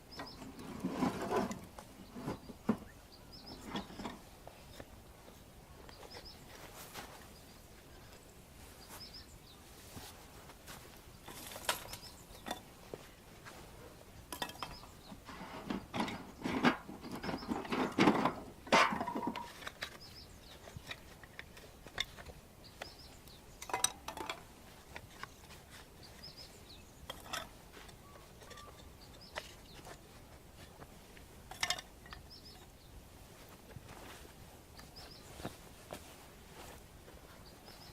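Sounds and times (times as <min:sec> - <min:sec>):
small birds chirping: 0:00.0 - 0:37.9
clinks and knocks of handling: 0:03.5 - 0:04.9, 0:11.2 - 0:12.7, 0:14.3 - 0:30.7, 0:31.4 - 0:32.7.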